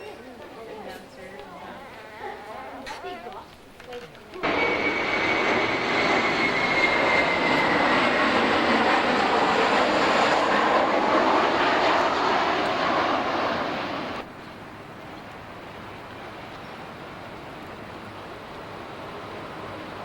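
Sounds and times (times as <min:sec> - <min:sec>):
loud rushing roar: 0:04.4 - 0:14.3.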